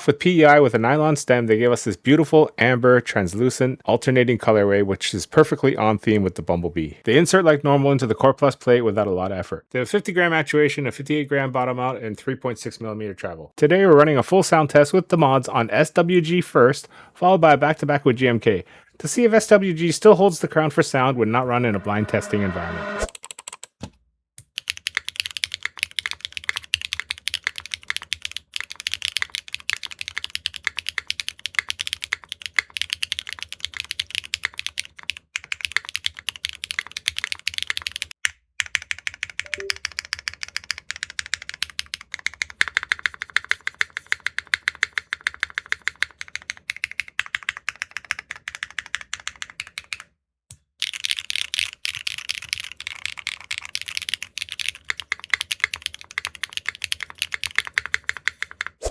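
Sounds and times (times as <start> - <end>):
mechanical keyboard typing: 23.1 - 23.8, 24.4 - 50.1, 50.8 - 58.8.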